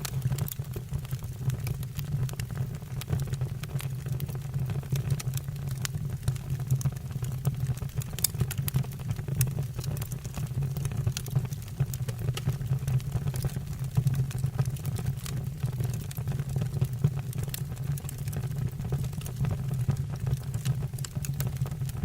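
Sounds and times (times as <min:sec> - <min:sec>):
low roar of flames: 0:00.0 - 0:12.6, 0:14.3 - 0:22.0
logs crackling and popping: 0:00.0 - 0:22.0.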